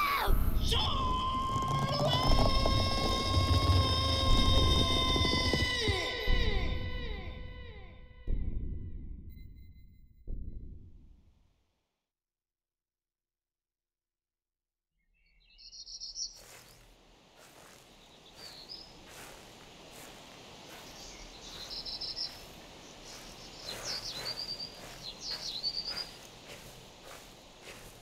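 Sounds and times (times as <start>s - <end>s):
small birds chirping: 15.0s - 28.0s.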